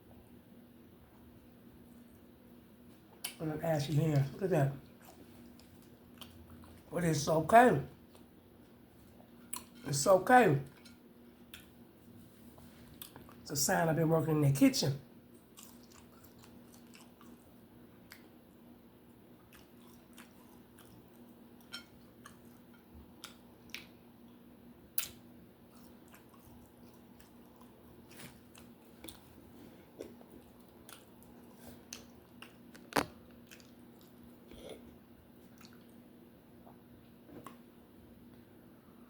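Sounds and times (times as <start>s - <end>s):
faint steady hum: 0.0s - 39.0s
chewing and biting food: 4.9s - 6.9s, 15.3s - 18.6s, 19.3s - 24.4s, 25.0s - 36.0s.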